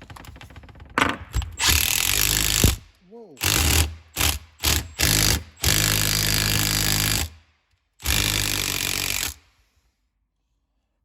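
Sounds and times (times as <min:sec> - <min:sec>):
power tool on a bolt: 0:01.6 - 0:02.8, 0:03.4 - 0:07.3, 0:08.0 - 0:09.5.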